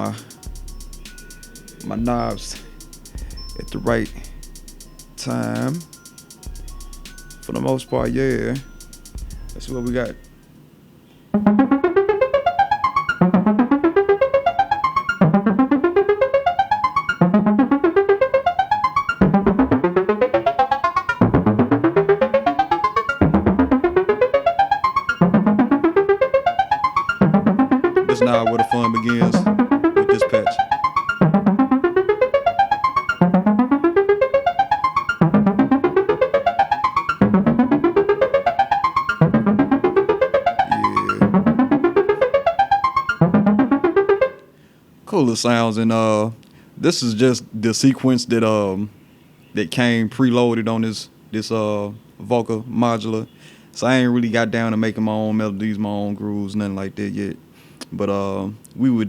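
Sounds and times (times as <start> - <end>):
synthesizer plucked notes rising: 0.0 - 10.5, 11.4 - 44.4.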